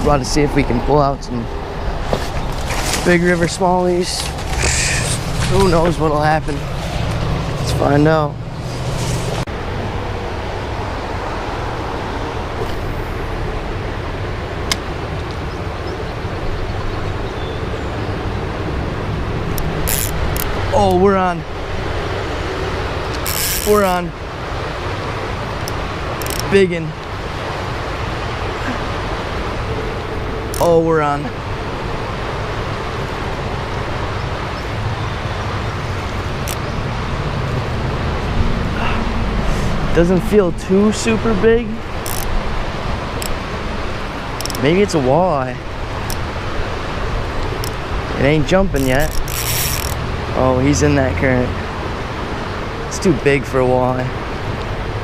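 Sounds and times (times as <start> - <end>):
creek rushing: 0.0 - 55.0
sharp click: 44.4 - 44.6.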